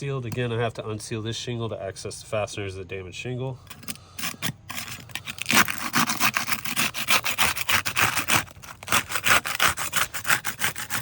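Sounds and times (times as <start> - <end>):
putty knife scraping shingle: 3.7 - 11.0.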